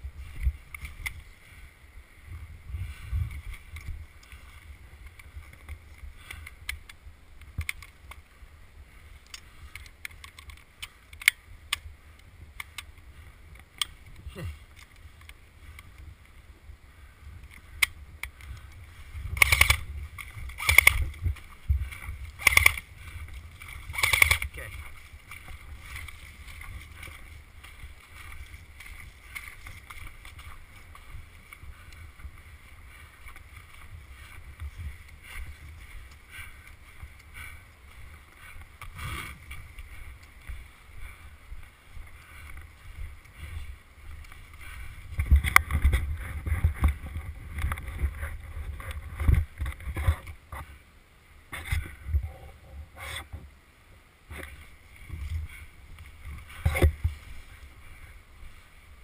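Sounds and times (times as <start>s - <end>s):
low rumbling wind: 0.0s - 59.0s
camera handling noise: 5.0s - 8.2s, 9.3s - 11.9s, 17.4s - 27.2s, 55.2s - 57.1s.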